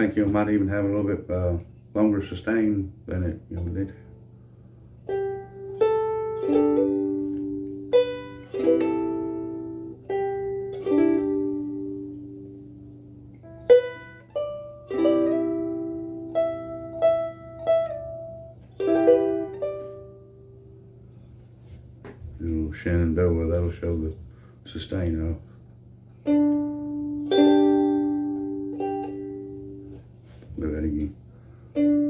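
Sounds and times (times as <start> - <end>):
ukulele notes and chords plucked: 5.0 - 20.8, 26.2 - 30.0, 31.7 - 32.0.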